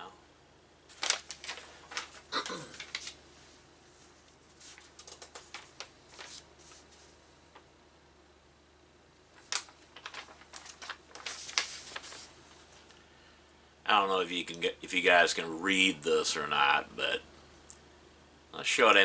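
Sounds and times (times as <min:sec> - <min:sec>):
paper rustling: 0:00.9 - 0:03.2, 0:03.9 - 0:07.6, 0:09.3 - 0:13.0.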